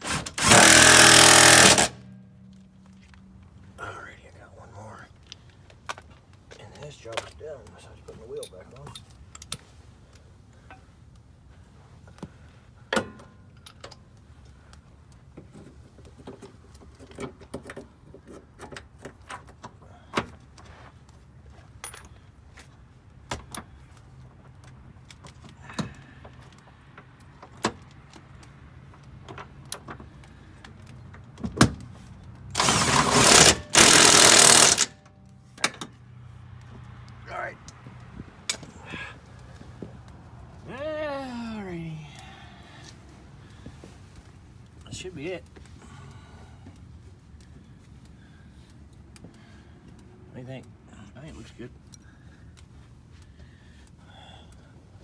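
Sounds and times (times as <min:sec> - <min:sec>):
impact wrench running: 0:00.0 - 0:02.0, 0:32.6 - 0:35.1.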